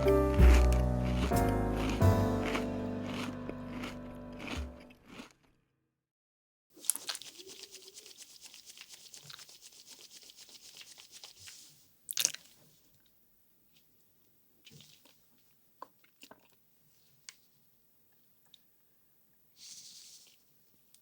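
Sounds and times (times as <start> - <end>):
crunching while eating: 0.0 - 5.6, 6.8 - 7.8, 12.1 - 13.1, 14.6 - 17.4.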